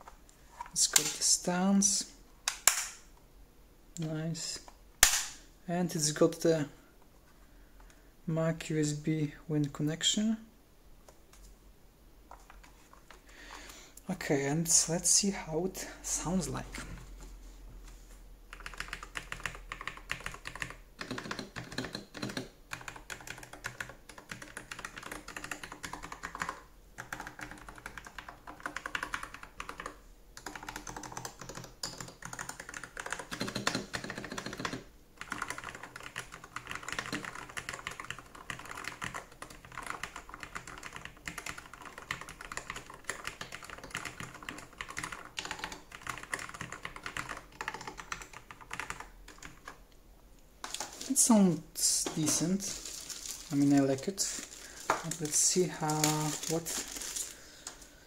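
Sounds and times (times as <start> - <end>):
keyboard typing clatter: 18.5 - 49.8.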